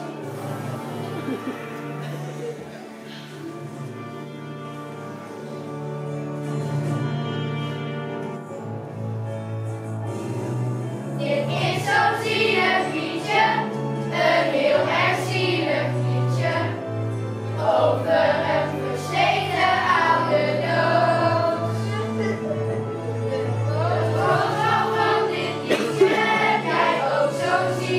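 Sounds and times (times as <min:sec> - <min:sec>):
instrumental accompaniment: 0:00.0 - 0:27.9
children singing in unison: 0:11.2 - 0:16.8, 0:17.6 - 0:21.9, 0:23.7 - 0:27.9.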